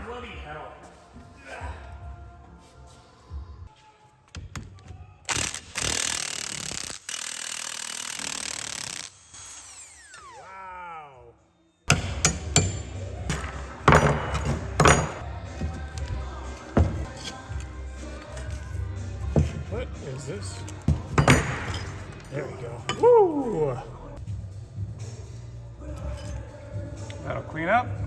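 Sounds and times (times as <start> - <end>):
power tool winding down: 5.3 - 10.7
metallic knocks and clanks: 11.9 - 23.4.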